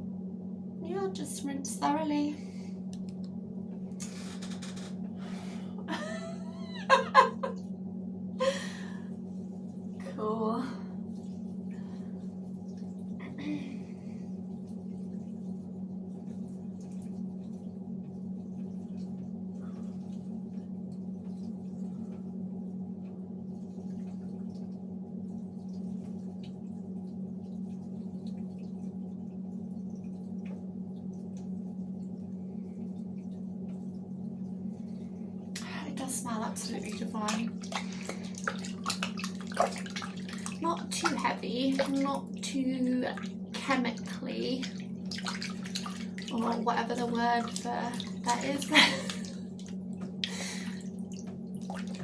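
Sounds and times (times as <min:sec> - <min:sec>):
low hum: 0:00.0 - 0:52.0
water splashing in a sink: 0:35.6 - 0:52.0.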